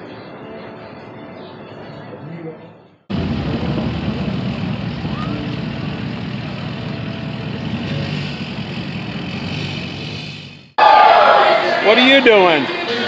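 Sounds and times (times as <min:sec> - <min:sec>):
traffic engines rumbling: 0:03.1 - 0:10.8.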